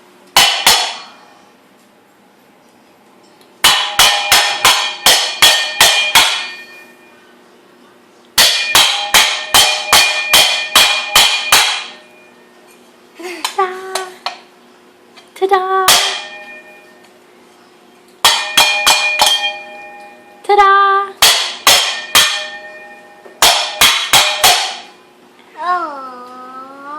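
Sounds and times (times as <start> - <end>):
metal struck ringing: 0.4 - 1.4, 3.6 - 7.2, 8.4 - 12.6, 15.8 - 17.0, 18.2 - 20.4, 21.2 - 25.1.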